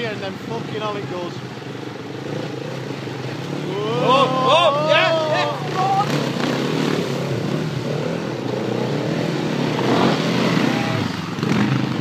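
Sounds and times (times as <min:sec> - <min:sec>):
motorcycle engine revving: 0:01.5 - 0:12.0.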